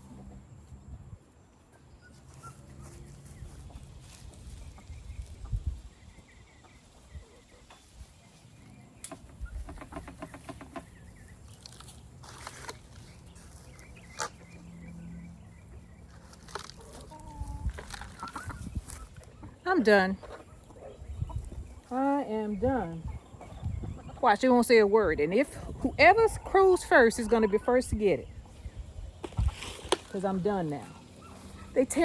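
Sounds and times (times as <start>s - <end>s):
chickens clucking: 15.6s - 32.0s.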